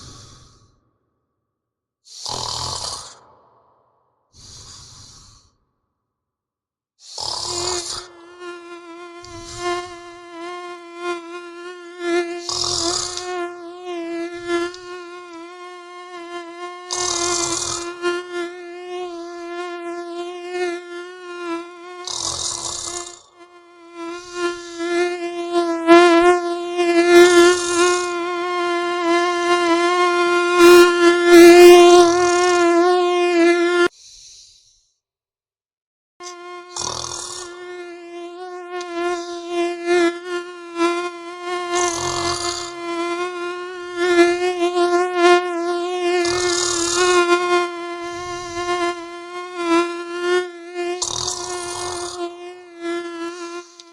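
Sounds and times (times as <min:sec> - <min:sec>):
person snoring: 0:00.0 - 0:00.8, 0:02.1 - 0:03.3, 0:04.4 - 0:05.6, 0:07.0 - 0:08.2, 0:09.2 - 0:10.0, 0:12.4 - 0:13.3, 0:16.9 - 0:18.0, 0:22.0 - 0:23.4, 0:24.2 - 0:24.8, 0:27.4 - 0:28.1, 0:36.2 - 0:37.6, 0:41.8 - 0:42.8, 0:46.2 - 0:47.1, 0:48.1 - 0:48.7, 0:51.0 - 0:52.2
mosquito buzzing whine: 0:07.1 - 0:34.0, 0:36.2 - 0:53.9.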